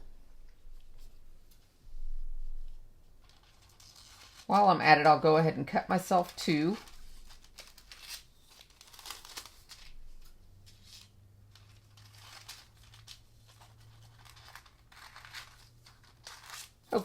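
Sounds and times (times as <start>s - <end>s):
foil sheet crinkling and rustling: 3.2s - 17.0s.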